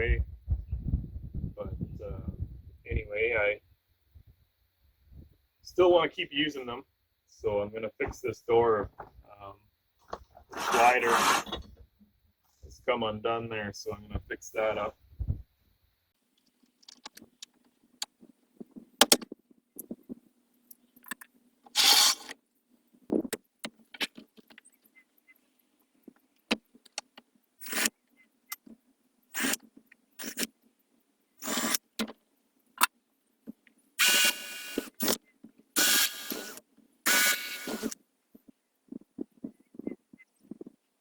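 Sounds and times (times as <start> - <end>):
door hardware scraping and rolling: 10.5 - 11.7
sliding door scraping rattle: 10.5 - 11.7
knocks and metal clicks: 19.0 - 20.0.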